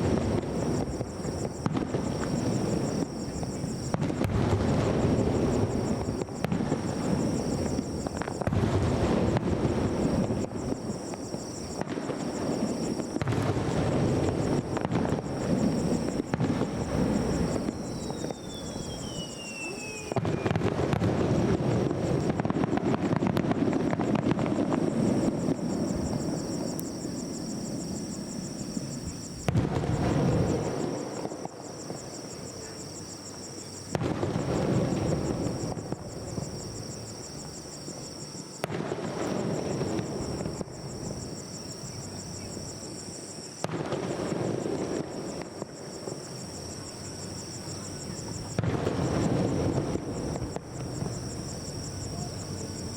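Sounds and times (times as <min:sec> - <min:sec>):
firework shells booming: 0:00.0 - 0:32.7, 0:33.8 - 0:41.5, 0:43.6 - 0:46.5, 0:47.6 - 0:52.9
firework crackling: 0:00.0 - 0:52.9
firework whistle falling in pitch: 0:17.4 - 0:20.8.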